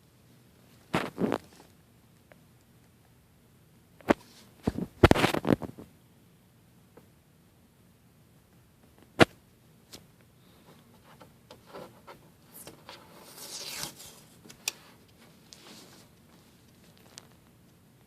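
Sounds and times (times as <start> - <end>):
rustling and scraping: 0.7 - 1.8, 4.1 - 5.9, 10.5 - 17.6.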